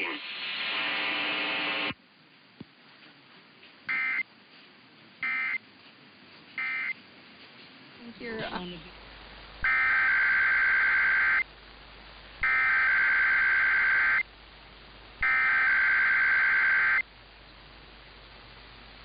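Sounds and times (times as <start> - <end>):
buzzing warbling data tone bursts: 9.6 - 11.4, 12.4 - 14.2, 15.2 - 17.0.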